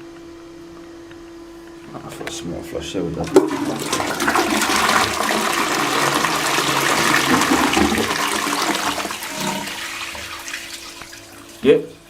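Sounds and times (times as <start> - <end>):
steady low hum: 0.0 - 6.0
toilet flush water rushing: 2.9 - 12.0.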